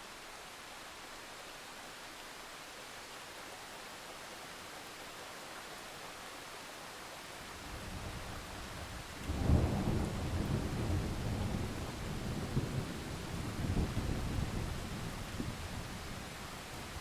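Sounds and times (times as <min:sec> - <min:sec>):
steady rain hiss: 0:00.0 - 0:17.0
thunder rumbling and cracking: 0:09.2 - 0:16.0.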